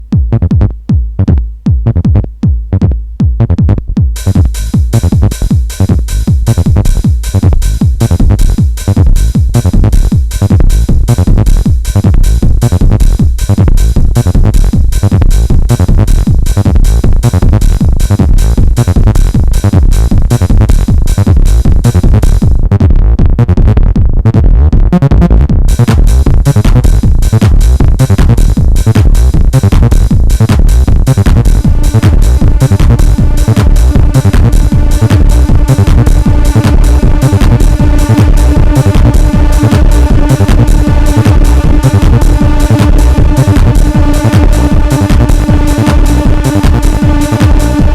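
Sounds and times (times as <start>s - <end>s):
acid bassline: 0.0s - 47.9s
acid techno music: 0.0s - 47.9s
kick drum pulsing: 0.0s - 47.9s
hi-hats: 4.1s - 22.5s, 25.7s - 47.9s.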